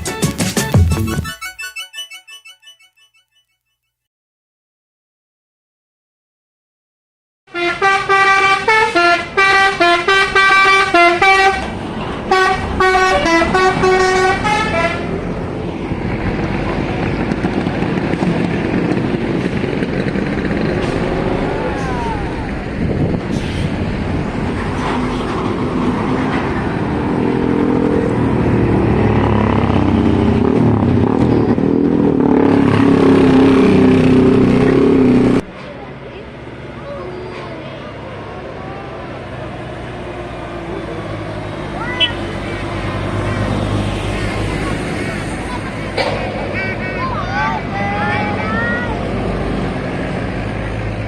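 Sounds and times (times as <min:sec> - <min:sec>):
multi-tone bus horn melody: 0:07.5 - 0:15.3, 0:41.8 - 0:43.4, 0:46.3 - 0:47.4, 0:48.0 - 0:48.9
bus engines and traffic rumble: 0:07.5 - 0:51.0.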